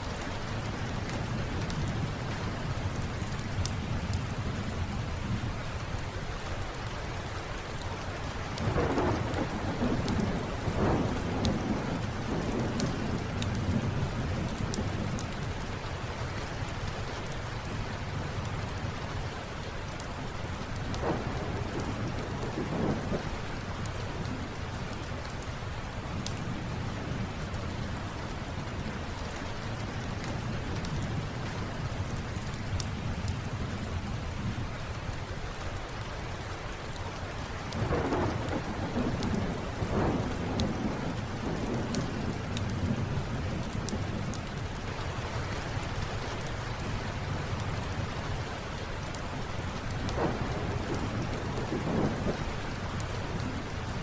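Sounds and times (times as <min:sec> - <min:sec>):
crackling wood fire: 0:00.0 - 0:54.0
steady rain: 0:00.0 - 0:54.0
rumble of thunder: 0:08.6 - 0:15.4, 0:20.6 - 0:24.5, 0:37.7 - 0:44.6, 0:49.8 - 0:54.0.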